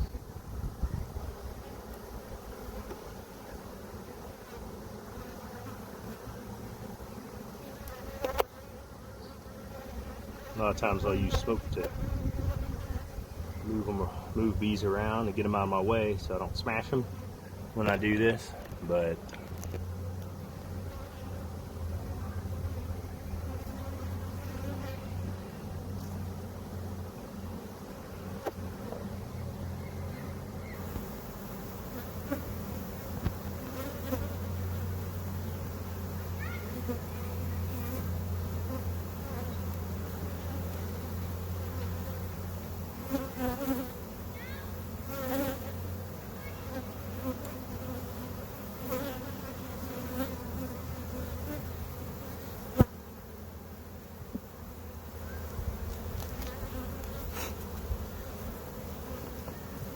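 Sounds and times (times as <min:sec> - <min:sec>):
single bee flying past: 0:00.0 - 0:15.3, 0:16.8 - 0:59.9
bees buzzing: 0:00.0 - 0:59.9.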